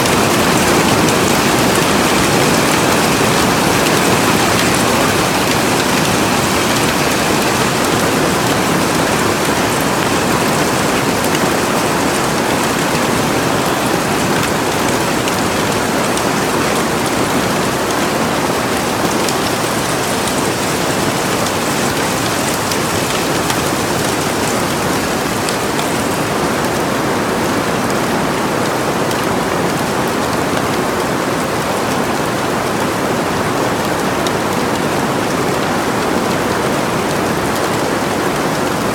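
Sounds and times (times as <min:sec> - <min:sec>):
hailstones ticking: 0:00.0 - 0:26.2
hail and rain on greenhouse roof: 0:00.0 - 0:38.9.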